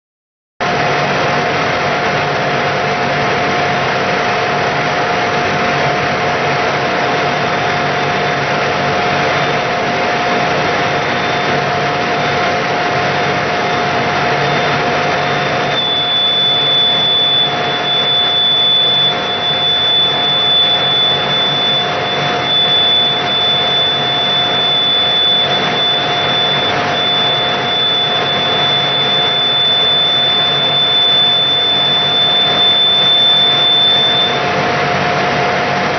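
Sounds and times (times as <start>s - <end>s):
mechanical whir: 0.7s - 35.9s
steady mid-pitched tone: 9.0s - 34.5s
disc brake squealing: 10.8s - 34.5s.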